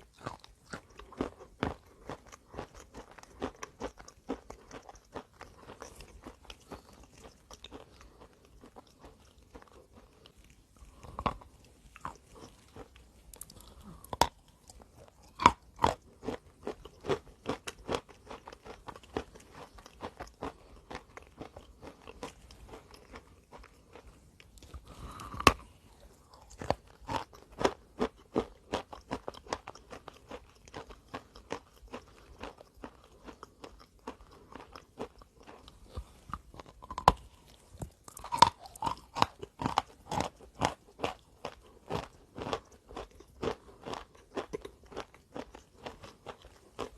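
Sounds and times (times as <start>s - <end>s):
person chewing crunchy chunks: 0.0s - 46.9s.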